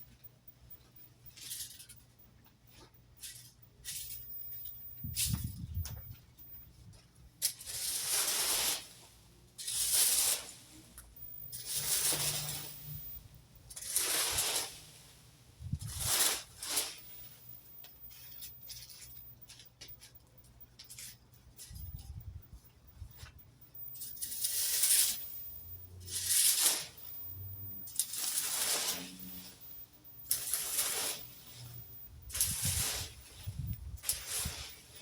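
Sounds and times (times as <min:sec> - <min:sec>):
rake dragging through dry leaves: 0:07.5 - 0:10.8, 0:11.5 - 0:13.1, 0:13.8 - 0:15.2, 0:15.8 - 0:19.6, 0:24.0 - 0:25.4, 0:26.0 - 0:27.2, 0:27.8 - 0:29.7, 0:30.3 - 0:35.0.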